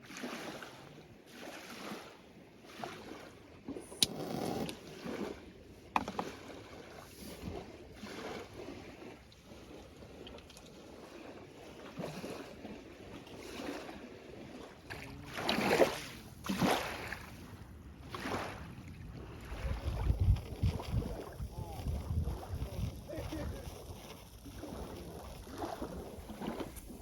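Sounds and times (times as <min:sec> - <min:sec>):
small waves washing on shore: 0:00.0 - 0:27.0
wind buffeting microphone: 0:17.3 - 0:27.0.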